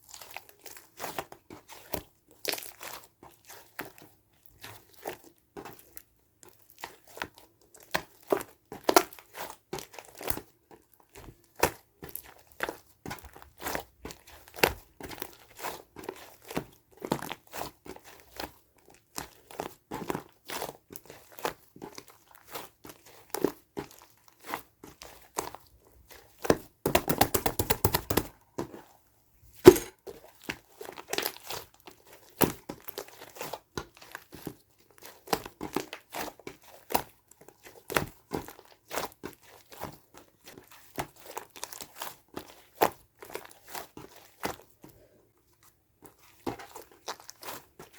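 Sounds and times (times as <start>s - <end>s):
light taps and clicks: 26.9s - 28.3s
sharp loud click: 29.7s - 29.9s.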